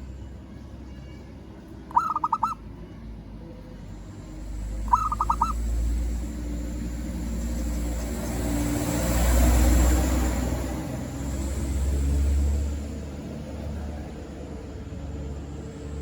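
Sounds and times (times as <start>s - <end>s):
passing vehicle rumble: 1.7s - 16.0s
dove cooing: 1.9s - 2.6s, 4.9s - 5.6s.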